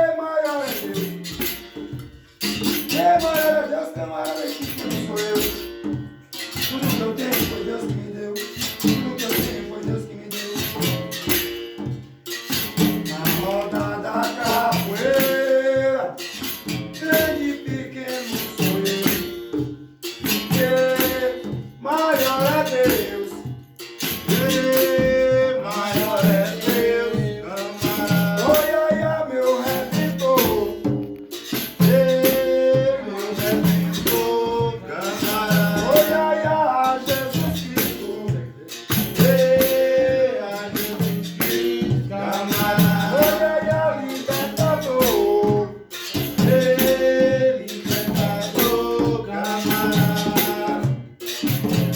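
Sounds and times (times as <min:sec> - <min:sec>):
berimbau with rattle: 0:00.4 - 0:51.9
person singing: 0:02.6 - 0:05.8, 0:06.6 - 0:11.6, 0:12.8 - 0:19.5, 0:20.3 - 0:51.4.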